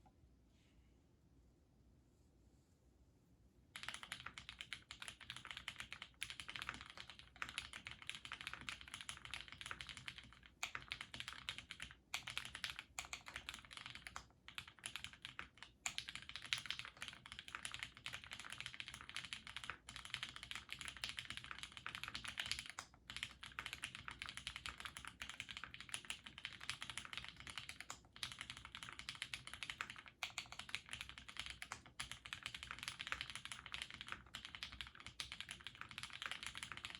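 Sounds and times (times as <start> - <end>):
typing on mechanical keyboard: 3.8 - 36.9.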